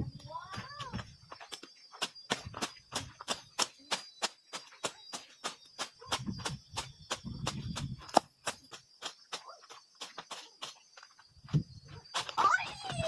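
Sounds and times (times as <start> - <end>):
high insect drone: 0.0 - 13.0.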